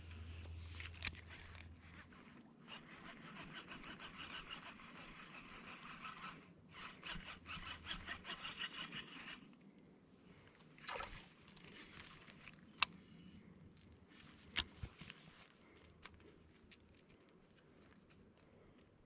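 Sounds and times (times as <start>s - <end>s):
fishing reel rasping and clicking: 2.7s - 9.5s.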